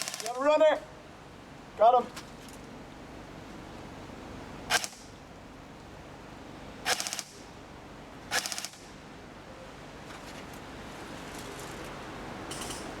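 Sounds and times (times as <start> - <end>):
airsoft rifle full-auto bursts: 0.0 - 0.4, 4.7 - 5.0, 6.9 - 7.4, 8.3 - 8.8.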